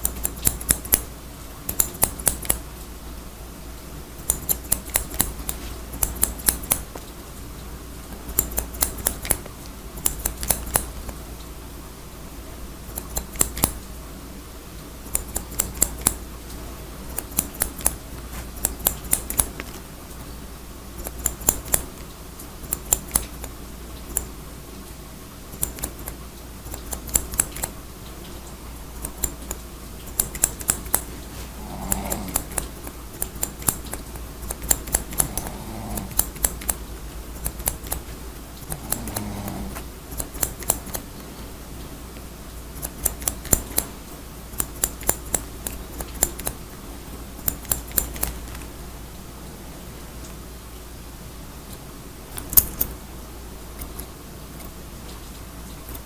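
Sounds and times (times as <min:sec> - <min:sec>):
scissors snipping hair: 0:00.0 - 0:01.1, 0:01.7 - 0:02.6, 0:04.2 - 0:07.1, 0:08.2 - 0:11.2, 0:12.9 - 0:13.8, 0:15.1 - 0:16.2, 0:17.1 - 0:20.3, 0:21.0 - 0:24.3, 0:25.6 - 0:27.7, 0:29.0 - 0:36.8, 0:37.4 - 0:41.1, 0:42.8 - 0:43.9, 0:44.6 - 0:46.6, 0:47.4 - 0:48.7, 0:51.7 - 0:53.0, 0:53.8 - 0:54.7
steady background hiss: 0:00.0 - 0:56.0.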